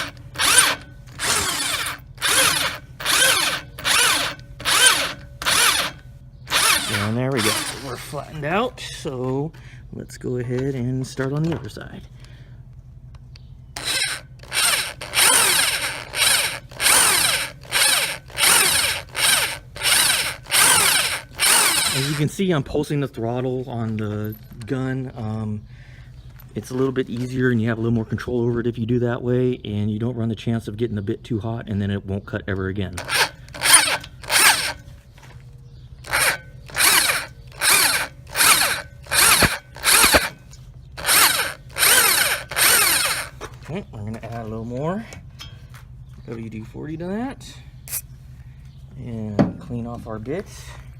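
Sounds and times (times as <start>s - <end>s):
hand drill cutting steel: 0.0s - 8.2s, 13.8s - 22.3s, 33.0s - 34.8s, 36.0s - 40.4s, 41.0s - 43.4s
drill bit whine spinning down: 13.8s - 22.2s, 33.0s - 34.8s, 36.1s - 40.3s, 41.0s - 43.3s.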